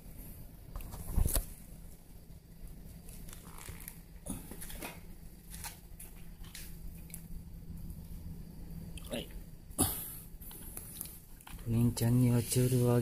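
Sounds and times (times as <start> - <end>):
plastic wrapper rustling and tearing: 3.1 - 5.8.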